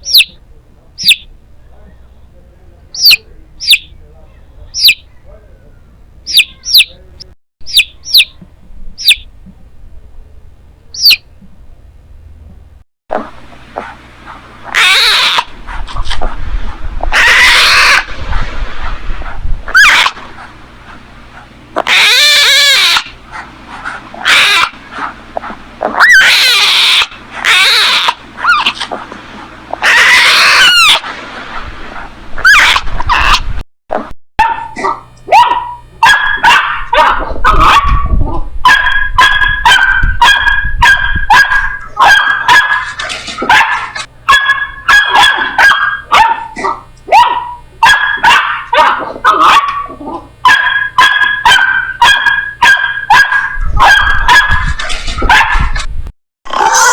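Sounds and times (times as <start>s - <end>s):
puppies yipping: 0.0s - 0.4s, 1.0s - 1.3s, 4.8s - 5.1s, 6.3s - 7.0s, 7.7s - 8.4s, 14.7s - 16.3s, 17.1s - 18.4s, 19.2s - 20.5s, 21.8s - 29.1s, 29.7s - 31.1s, 32.4s - 33.5s, 34.4s - 55.7s.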